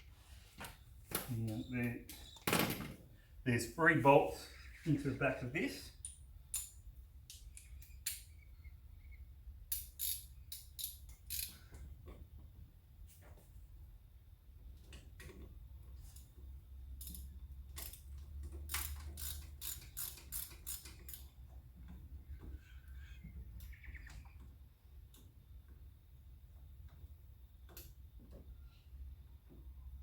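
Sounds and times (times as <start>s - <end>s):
socket ratchet clicking: 9.7s - 11.5s, 17.8s - 21.4s.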